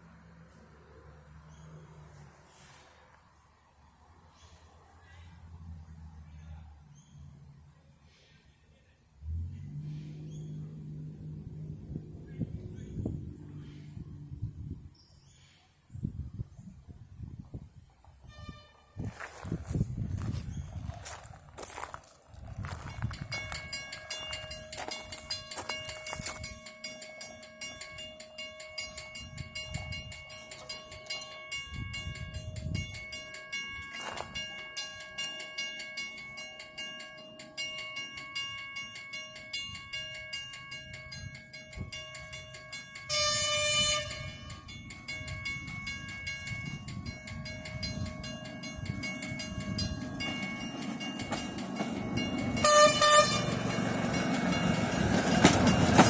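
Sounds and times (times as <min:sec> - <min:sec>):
steam train running: 0:21.8 - 0:56.0
steam whistle blast: 0:43.1 - 0:44.5.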